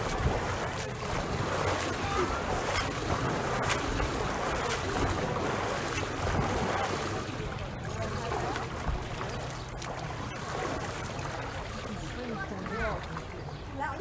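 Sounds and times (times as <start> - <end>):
wind rumble on microphone: 0.0 - 12.0
faint sharp splashes: 0.0 - 14.0
splashing and lapping water: 0.0 - 14.0.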